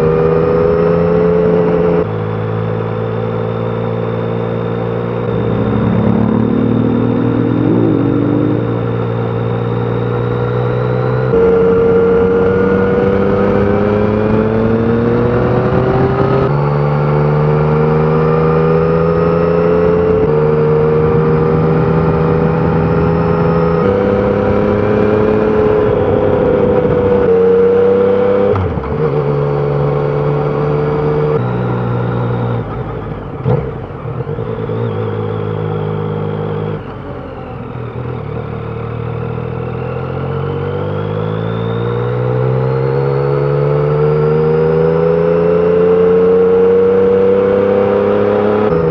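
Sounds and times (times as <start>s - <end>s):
motorcycle engine accelerating: 0.0s - 48.9s.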